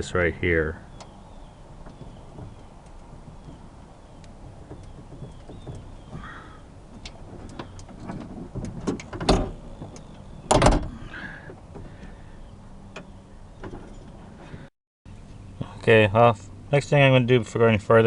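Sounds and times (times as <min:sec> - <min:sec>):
light clicks and taps on car door: 0:01.8 - 0:06.3
car door clunks: 0:01.8 - 0:12.1.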